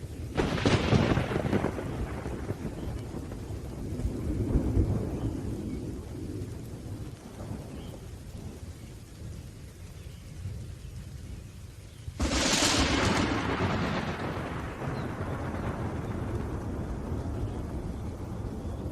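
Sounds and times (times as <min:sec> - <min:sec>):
thunder rumbling: 0:00.0 - 0:09.8, 0:12.1 - 0:18.9
steady rain: 0:00.0 - 0:18.9.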